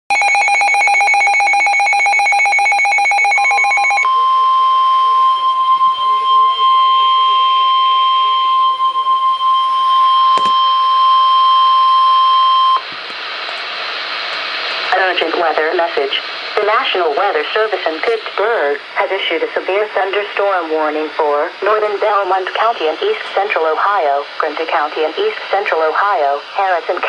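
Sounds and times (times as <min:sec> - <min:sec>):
steady high alarm tone: 0:00.1 - 0:12.9
radio hiss: 0:12.8 - 0:27.0.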